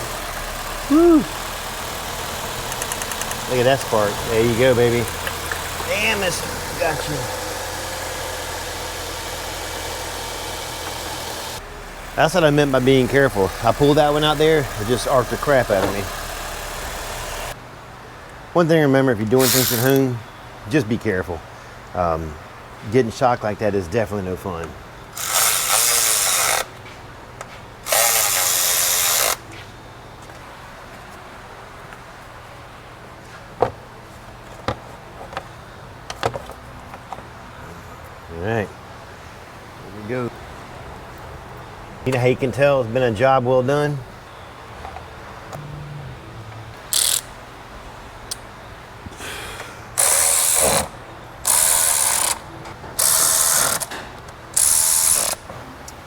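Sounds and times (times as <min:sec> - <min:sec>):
electric power tool motor: 0:00.0 - 0:17.6, 0:19.4 - 0:20.0, 0:25.2 - 0:26.7, 0:27.9 - 0:29.4, 0:46.5 - 0:47.4, 0:50.0 - 0:50.9, 0:51.5 - 0:52.4, 0:53.0 - 0:53.9, 0:54.6 - 0:55.4
rapid ratcheting clicks: 0:01.3 - 0:11.6, 0:19.4 - 0:20.0.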